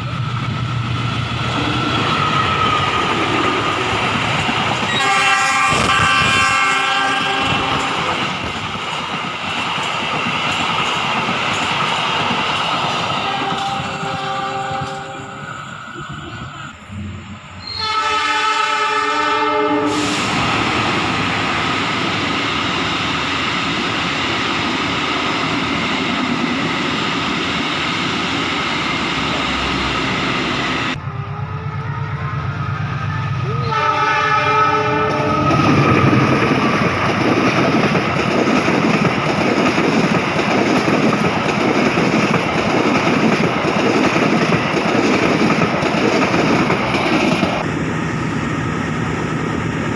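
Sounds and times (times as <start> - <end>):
locomotive horn blast: 4.9 - 8.2, 13.2 - 15.4, 17.6 - 20.3, 33.6 - 35.8
train wheels clattering over rails: 35.1 - 47.7.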